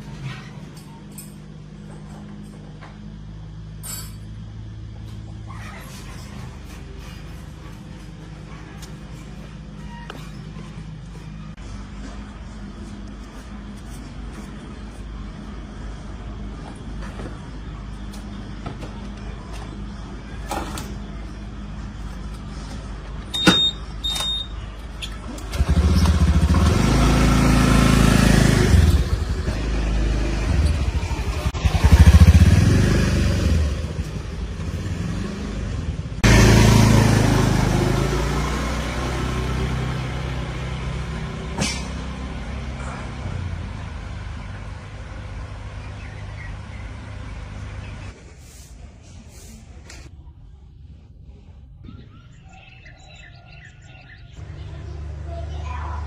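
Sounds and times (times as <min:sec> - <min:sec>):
vehicles passing close by: 0:24.6 - 0:48.4, 0:52.8 - 0:56.0
low engine hum: 0:24.8 - 0:48.3, 0:54.3 - 0:56.0.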